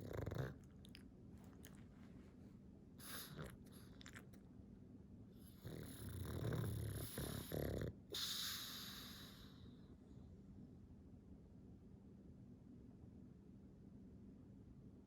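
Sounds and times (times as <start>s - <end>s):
dog snoring: 0.0s - 1.8s, 3.0s - 4.3s, 5.4s - 9.6s.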